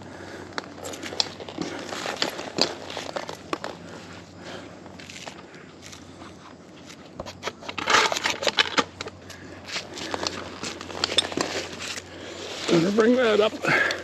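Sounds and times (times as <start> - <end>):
branches rustling: 0.0 - 7.0, 7.8 - 14.0
climbing gear clicking: 0.3 - 4.0.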